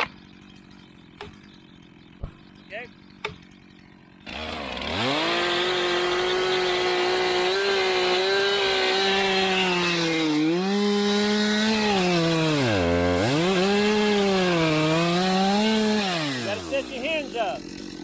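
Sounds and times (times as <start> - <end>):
chainsaw cutting tree: 0.0 - 18.0.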